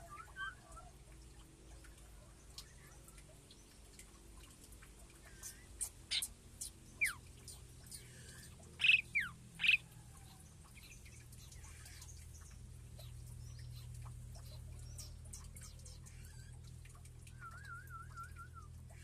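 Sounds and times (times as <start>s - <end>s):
faint low hum: 0.0s - 19.0s
birds chirping: 5.2s - 19.0s.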